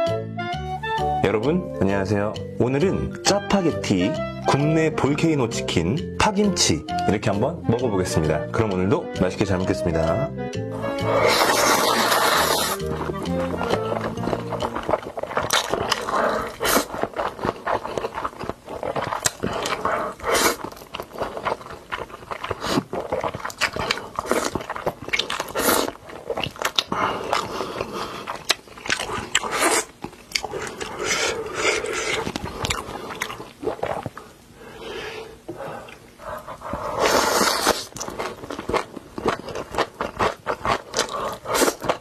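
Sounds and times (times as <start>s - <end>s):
person chewing crunchy food: 10.8s - 34.4s, 35.8s - 42.0s.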